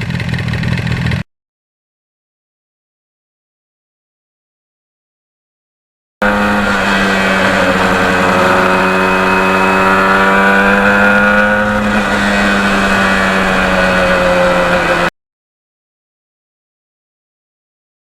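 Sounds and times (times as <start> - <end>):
motorcycle engine running: 0.0 - 1.3, 6.2 - 15.1.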